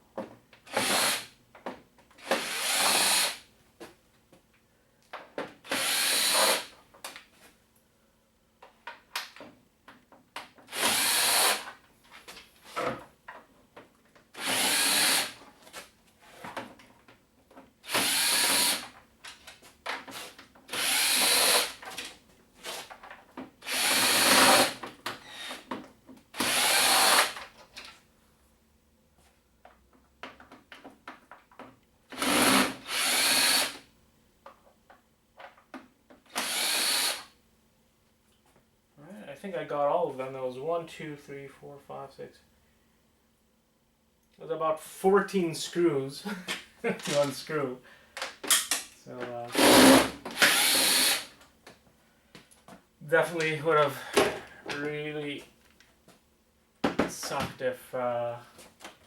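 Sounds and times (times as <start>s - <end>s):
electric screwdriver running: 2.3s - 3.4s, 5.7s - 6.7s, 10.7s - 11.6s, 14.4s - 15.4s, 17.9s - 18.8s, 20.8s - 21.8s, 23.7s - 24.8s, 26.4s - 27.4s, 32.2s - 33.8s, 36.3s - 37.2s, 49.5s - 51.3s
screws clicking and knocking: 20.1s - 21.8s, 49.5s - 51.3s.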